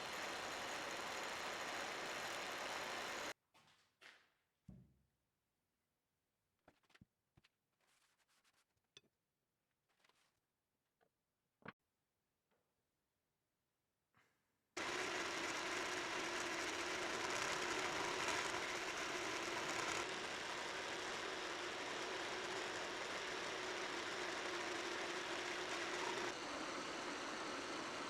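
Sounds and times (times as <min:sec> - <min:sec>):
machine tool motor hum: 0:00.0 - 0:03.3, 0:14.8 - 0:28.0
metal cutting noise: 0:00.0 - 0:03.3, 0:14.8 - 0:28.0.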